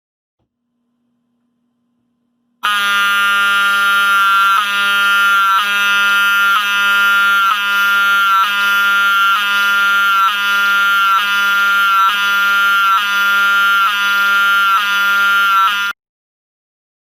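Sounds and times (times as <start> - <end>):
buzzy fire alarm horn: 2.6 - 16.0.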